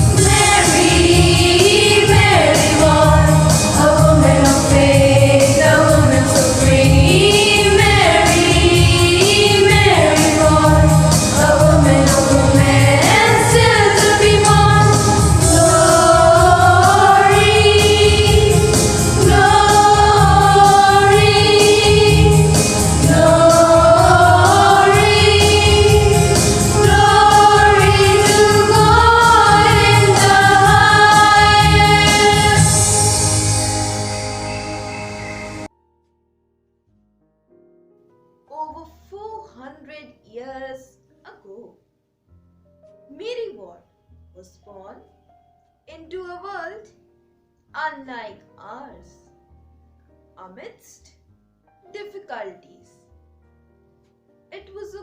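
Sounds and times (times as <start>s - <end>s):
steady beat: 0.0s - 33.6s
choir singing: 0.0s - 35.7s
instrumental accompaniment: 0.0s - 36.1s.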